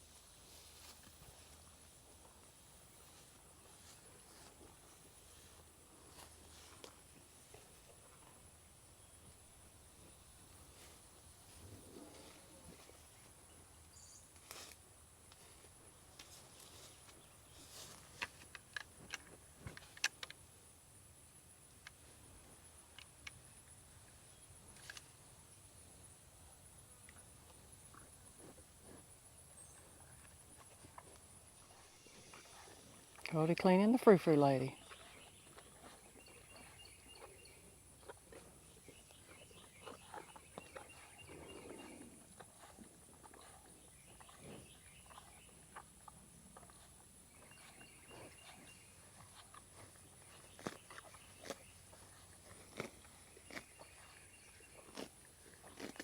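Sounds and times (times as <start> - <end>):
small sharp clicks and knocks: 18.2 - 20.4.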